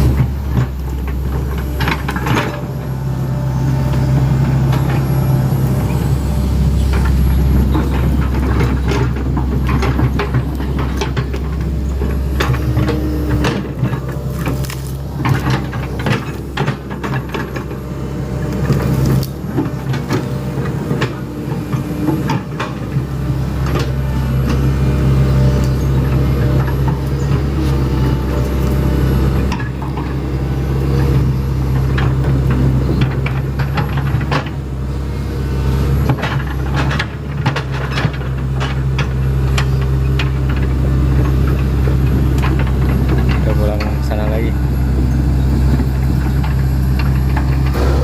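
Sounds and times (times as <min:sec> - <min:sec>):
excavator diesel engine running: 0:00.0 - 0:48.0
knocks and clatters: 0:06.8 - 0:17.7.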